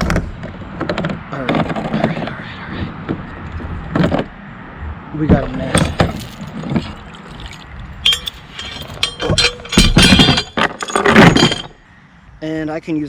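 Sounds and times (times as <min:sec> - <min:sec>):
water splashing: 0:05.5 - 0:09.3
gear clinking against kayak: 0:05.6 - 0:11.8.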